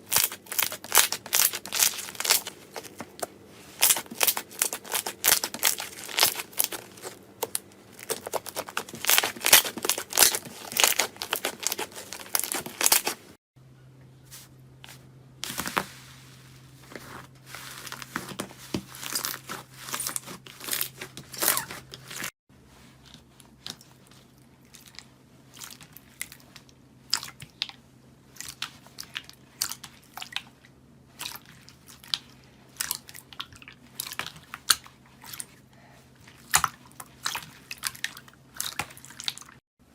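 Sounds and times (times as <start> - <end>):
slime crackling and crunching: 0.0 - 13.4, 17.0 - 22.3.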